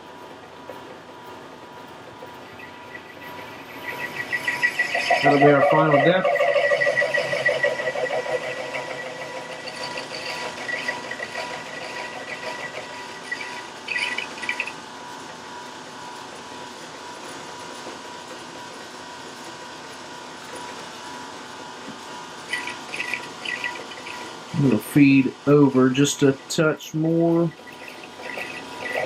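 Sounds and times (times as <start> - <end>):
lathe running hum and whine: 0.0 - 29.0
lathe cutting steel: 2.4 - 14.9, 22.2 - 29.0.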